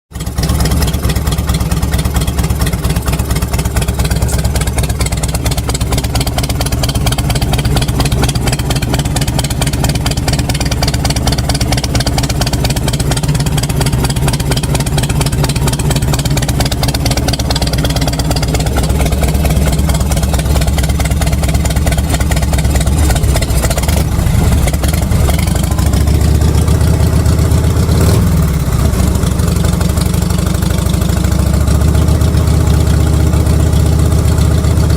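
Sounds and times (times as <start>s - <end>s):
motorcycle engine idling: 0.1s - 34.9s.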